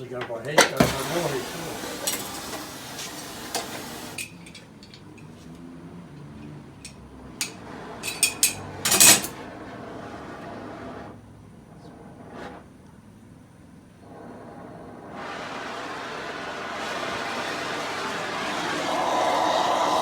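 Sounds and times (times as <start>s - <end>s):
steady hiss: 0.0s - 4.5s, 10.4s - 20.0s
metal tools clinking: 7.4s - 9.4s.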